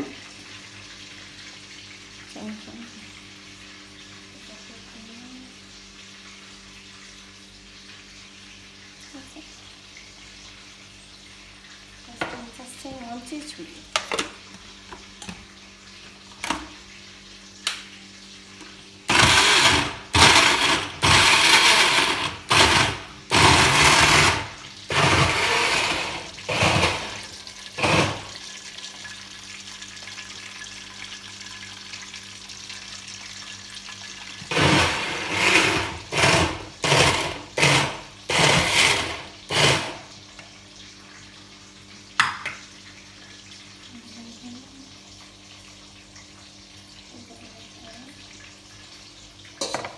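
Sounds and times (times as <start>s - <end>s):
blender bursts: 19.1s - 28.4s, 34.5s - 40.1s.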